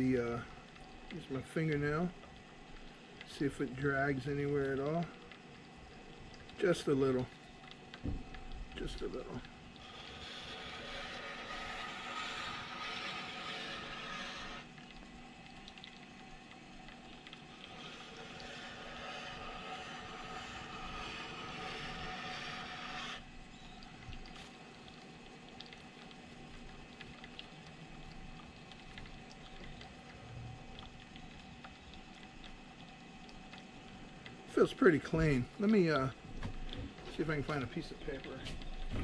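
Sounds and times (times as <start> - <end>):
knife hissing on turning wheel: 9.8 - 14.7, 17.7 - 23.3
sharpening machine motor hum: 9.8 - 14.7, 17.5 - 23.2.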